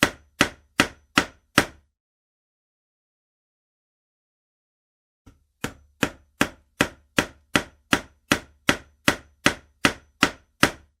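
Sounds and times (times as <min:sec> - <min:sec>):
hammer striking: 0:00.0 - 0:01.9, 0:05.3 - 0:11.0.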